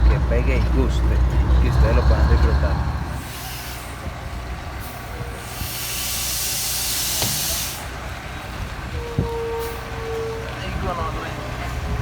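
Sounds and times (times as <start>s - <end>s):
diesel engine droning: 0.0s - 12.0s
air brake hissing: 4.8s - 8.0s.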